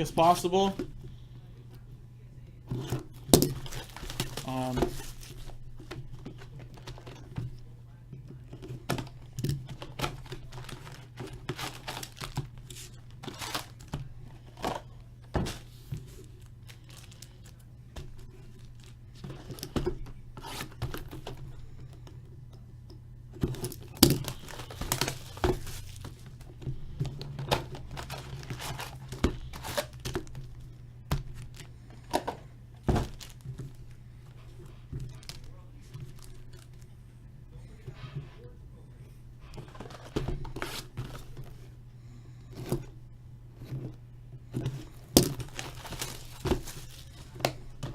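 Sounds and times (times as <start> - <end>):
steady low hum: 0.0 - 47.9
shrink-wrap and cardboard tearing: 3.4 - 5.6, 9.7 - 13.9, 23.4 - 26.4, 27.2 - 30.5, 45.2 - 47.9.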